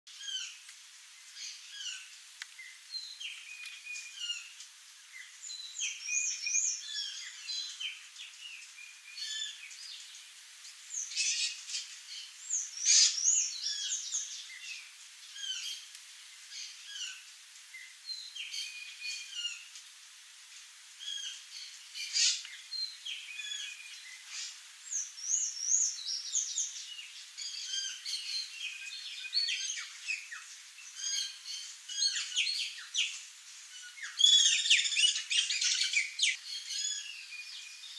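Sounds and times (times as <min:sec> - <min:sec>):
birds chirping and whistling: 0:05.5 - 0:10.0, 0:10.9 - 0:14.8, 0:33.8 - 0:37.9.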